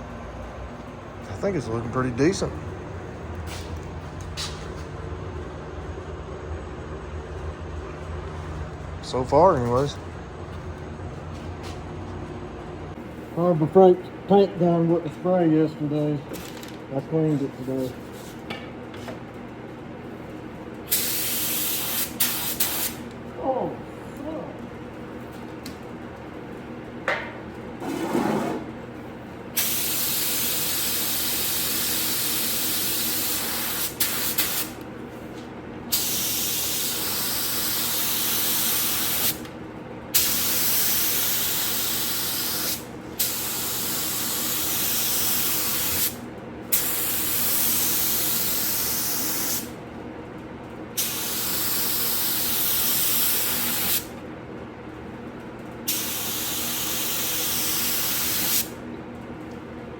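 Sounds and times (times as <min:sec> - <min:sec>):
spray gun hissing: 0:20.9 - 0:23.0, 0:29.6 - 0:34.7, 0:35.9 - 0:39.4, 0:40.2 - 0:46.2, 0:46.8 - 0:49.7, 0:51.0 - 0:54.0, 0:55.9 - 0:58.7.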